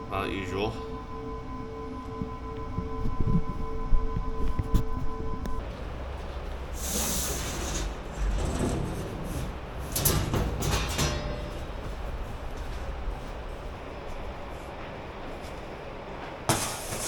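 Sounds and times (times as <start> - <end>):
low rumble: 0.0 - 15.9
hiss: 6.8 - 8.0
sharp metallic clanks: 7.3 - 12.3.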